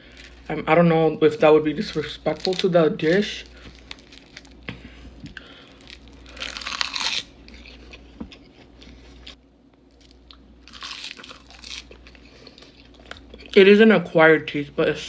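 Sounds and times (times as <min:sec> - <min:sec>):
crab shell crunching: 0:01.8 - 0:13.5.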